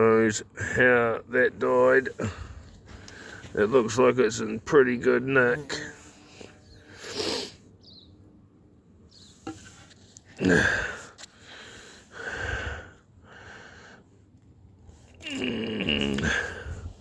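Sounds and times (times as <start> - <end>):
man breathing heavily and sniffing: 2.2 - 3.6, 6.1 - 7.8, 9.7 - 15.3, 15.9 - 17.0.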